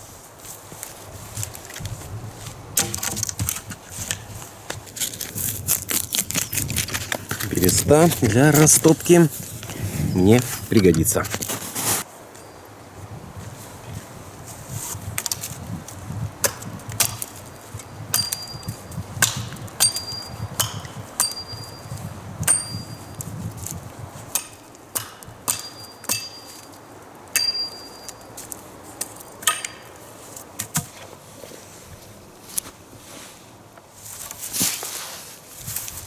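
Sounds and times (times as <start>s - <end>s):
metal blade chopping wood: 2.8s - 3.7s, 16.4s - 17.3s, 18.1s - 21.8s, 24.3s - 26.7s, 27.4s - 28.3s, 29.4s - 30.0s
high metallic ring: 18.2s - 18.8s, 19.8s - 23.2s, 25.5s - 26.7s, 27.4s - 28.4s.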